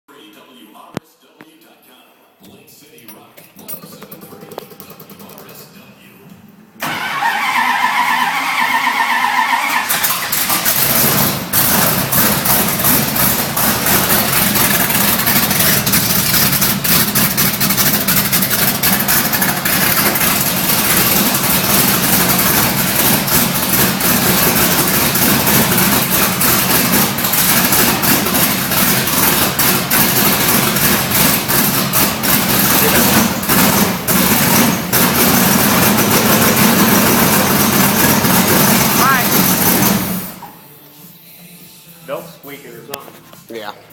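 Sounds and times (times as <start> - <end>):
car engine running steadily: 10.3 - 40.5.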